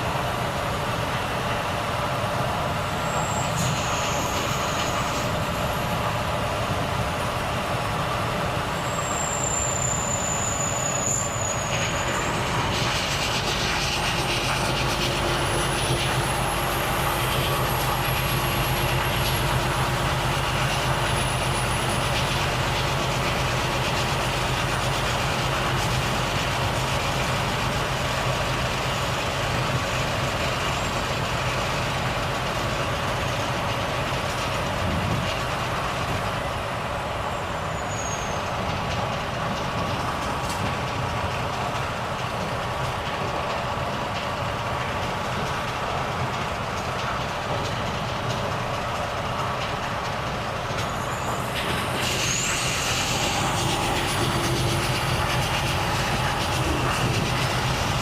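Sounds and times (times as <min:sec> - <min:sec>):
road noise: 0:00.0 - 0:58.0
truck engine running: 0:00.0 - 0:58.0
thin high whistle: 0:08.8 - 0:12.4, 0:37.7 - 0:38.5.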